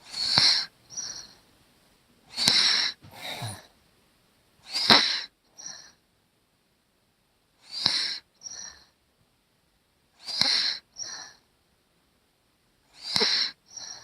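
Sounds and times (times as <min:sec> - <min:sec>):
child snoring wheezily: 0:02.4 - 0:03.7, 0:13.0 - 0:14.0.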